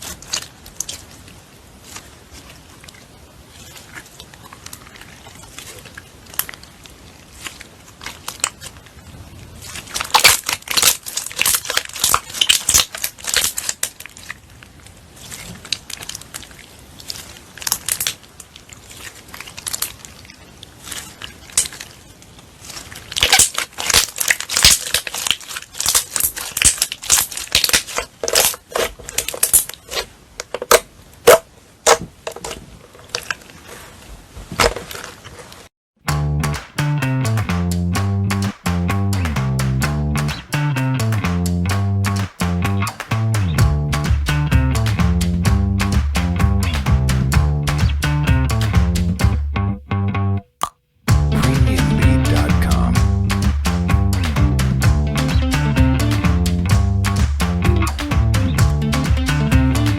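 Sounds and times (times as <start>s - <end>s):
slime squeezed by hand crackling: 9.6s - 14.4s, 22.6s - 28.8s.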